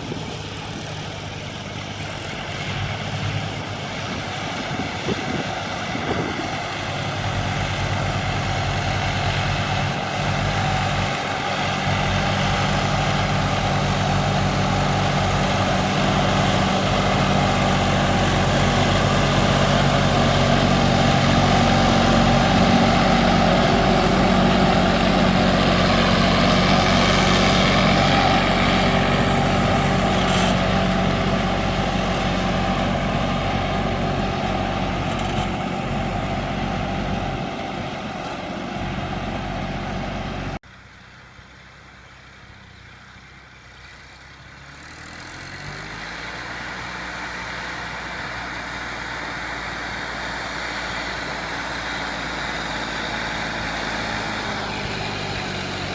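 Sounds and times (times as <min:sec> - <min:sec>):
tractor diesel engine running: 0:00.0 - 0:55.9.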